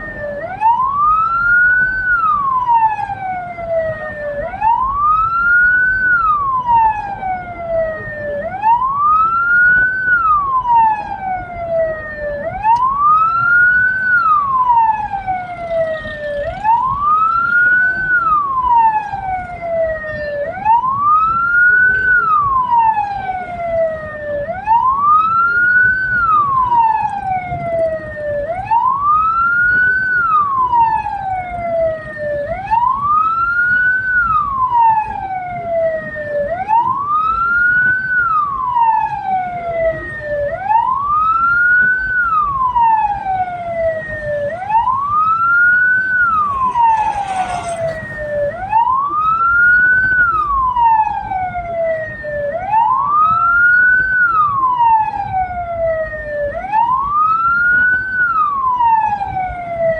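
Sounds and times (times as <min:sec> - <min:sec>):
low rumble of moving vehicle: 0:00.0 - 0:59.9
siren wailing: 0:40.8 - 0:51.6
burst of noise: 0:46.0 - 0:48.8.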